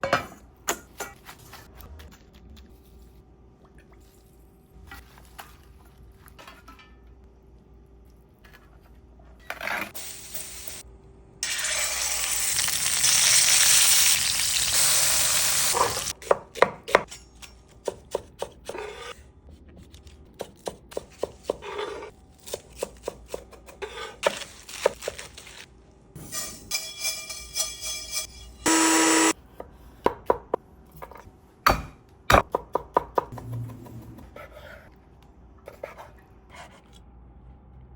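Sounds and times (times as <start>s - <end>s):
steak sizzling in a pan: 11.4s - 16.1s.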